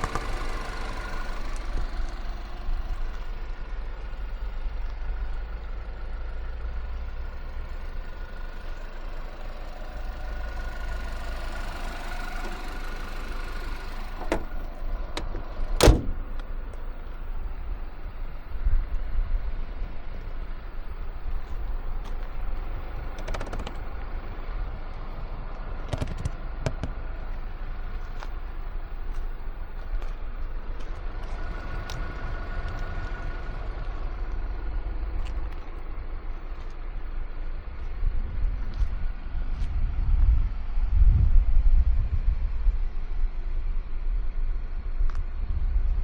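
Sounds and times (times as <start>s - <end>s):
car road and engine rumble: 0.0s - 46.0s
knocks and clicks: 23.1s - 24.0s, 25.9s - 27.0s.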